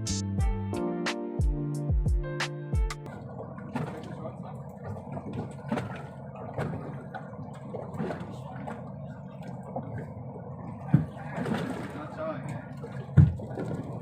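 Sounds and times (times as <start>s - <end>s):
background music with plucked notes: 0.0s - 3.1s
boat engine rumble: 3.0s - 14.0s
water: 3.0s - 14.0s.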